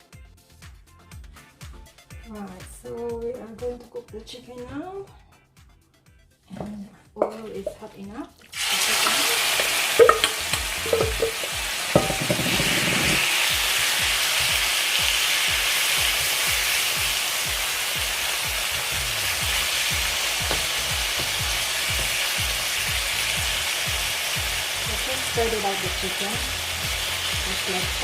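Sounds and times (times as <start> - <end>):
chicken sizzling in hot oil: 7.5 - 28.0
knocks in pan: 9.0 - 13.3, 20.4 - 21.3.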